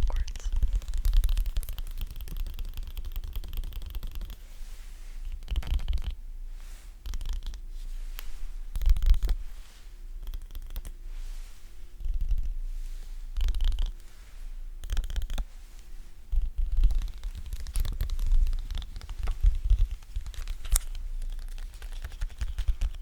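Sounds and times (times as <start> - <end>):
sticky crackling and peeling: 16.3 - 23.0.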